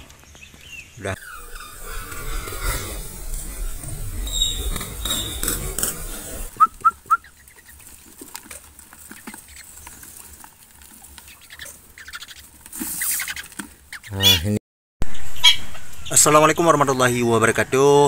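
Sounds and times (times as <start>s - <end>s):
high thin bird chirps: 0.7s - 7.8s, 11.3s - 14.4s
rustling hiss: 1.1s - 13.9s
short loud whistled notes: 6.3s - 7.3s.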